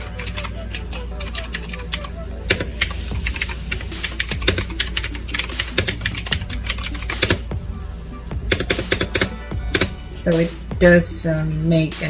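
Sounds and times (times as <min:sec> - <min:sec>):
clicky mechanical keyboard typing: 0:00.0 - 0:07.4, 0:08.5 - 0:10.0.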